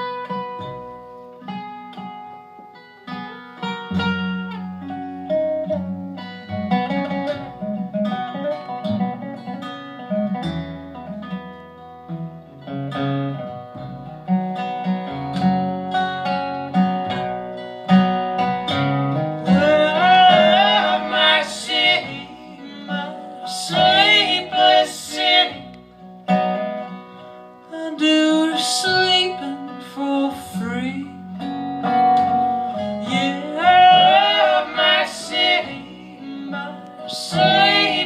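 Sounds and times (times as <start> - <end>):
plucked acoustic guitar: 0.0 - 38.0.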